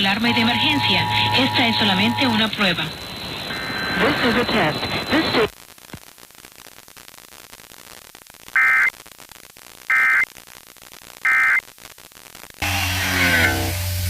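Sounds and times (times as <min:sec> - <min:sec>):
warbling digital tone bursts: 0:00.0 - 0:05.2
faint static hiss: 0:00.0 - 0:12.6
music: 0:12.6 - 0:14.0.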